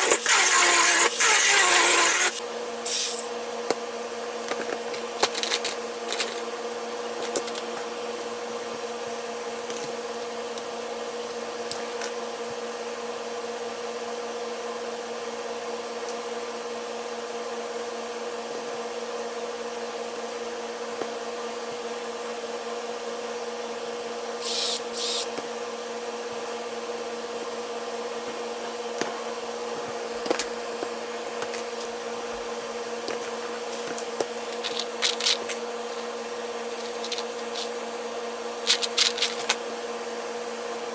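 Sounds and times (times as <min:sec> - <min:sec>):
short noisy bursts: 0:00.0 - 0:03.2
small motor whining through gears: 0:00.0 - 0:03.2, 0:24.4 - 0:25.3.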